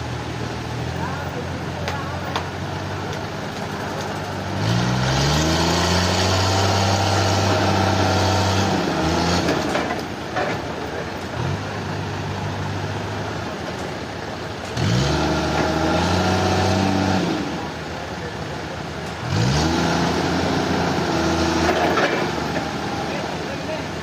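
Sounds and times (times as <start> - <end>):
sawmill engine revving: 0.0 - 24.0.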